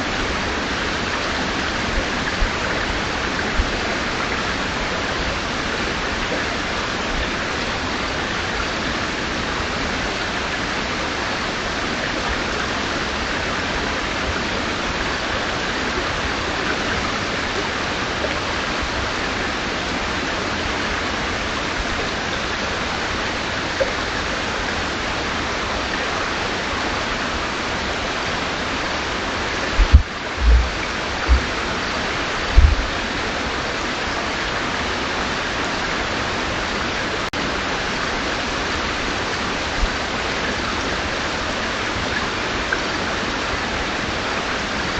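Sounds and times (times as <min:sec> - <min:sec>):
river water rushing: 0:00.0 - 0:44.9
deep thumps: 0:29.8 - 0:31.6, 0:32.5 - 0:33.0.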